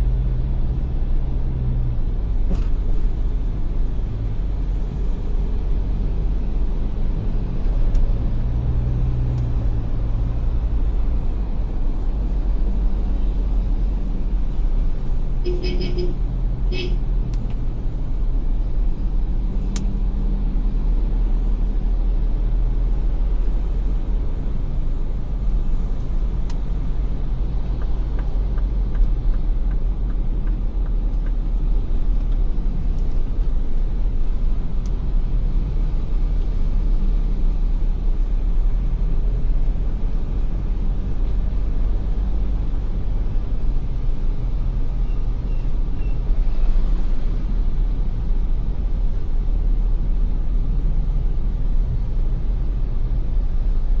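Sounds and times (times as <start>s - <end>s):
engine and road rumble: 0.0s - 54.0s
light ticks: 19.7s - 19.9s, 26.4s - 26.7s, 27.6s - 33.5s.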